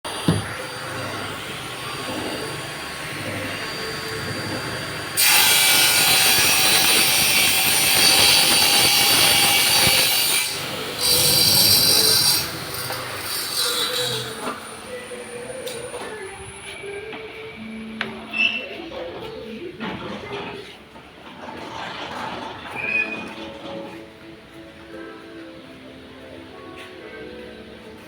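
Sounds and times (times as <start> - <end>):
table saw motor hum: 0.1 - 7.4
saw blade cutting wood: 0.1 - 16.1.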